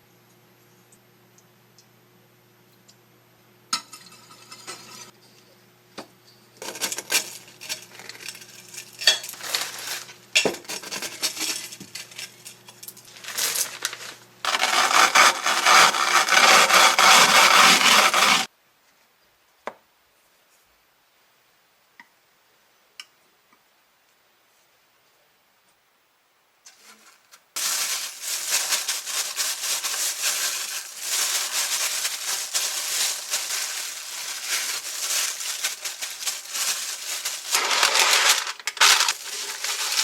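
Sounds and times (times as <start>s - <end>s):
dishes and utensils clinking: 6.6s - 13.0s.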